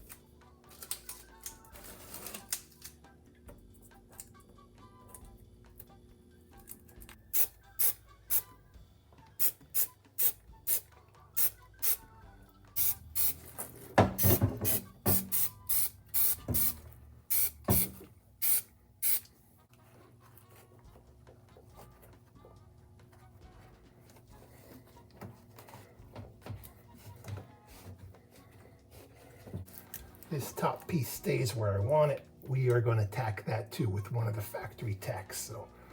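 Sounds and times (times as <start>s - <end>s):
hissing spray bursts: 12.8s - 13.4s, 14.2s - 19.2s.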